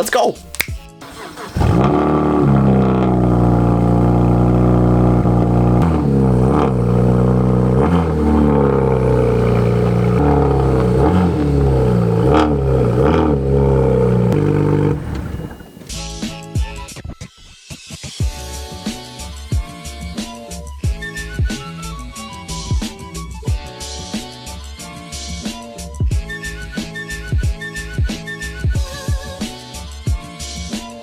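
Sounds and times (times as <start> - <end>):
car engine revving: 1.0 - 15.9.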